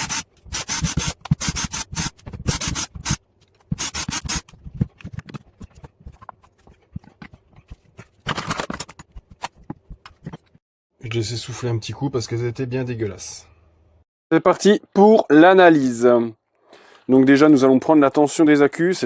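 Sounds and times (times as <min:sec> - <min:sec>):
handling clicks and knocks: 0:04.4 - 0:10.6.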